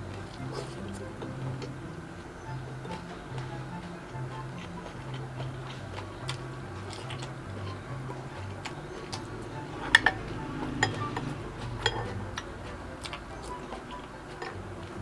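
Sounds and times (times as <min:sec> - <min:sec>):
soft music with slow bass: 0:00.0 - 0:15.0
utensils clinking on plate: 0:04.6 - 0:15.0.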